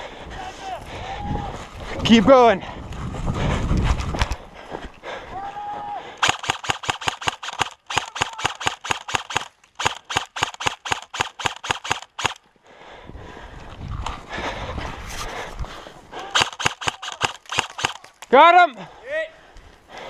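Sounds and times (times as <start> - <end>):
airsoft rifle firing bursts: 6.2 - 12.4, 16.4 - 18.1.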